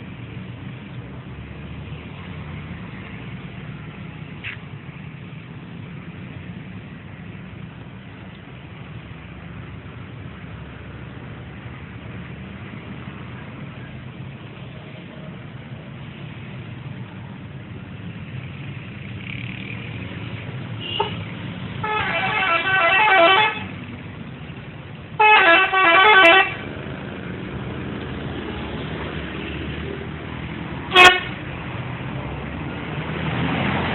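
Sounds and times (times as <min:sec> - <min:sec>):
engine and traffic rumble: 0:00.0 - 0:33.9
multi-tone musical bus horn: 0:20.8 - 0:21.2, 0:21.8 - 0:23.8, 0:25.2 - 0:26.6, 0:30.9 - 0:31.4.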